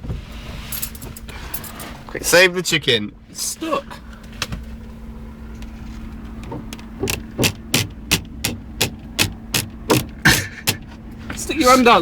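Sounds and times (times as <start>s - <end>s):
car engine idling: 3.2s - 12.0s
sharp clicking: 6.7s - 10.9s.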